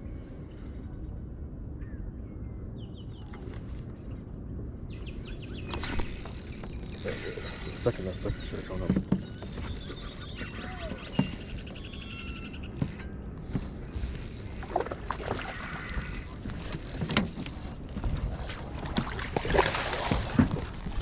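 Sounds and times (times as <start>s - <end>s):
fishing reel clicking: 5.7s - 19.2s
scattered knocks: 5.8s - 15.2s.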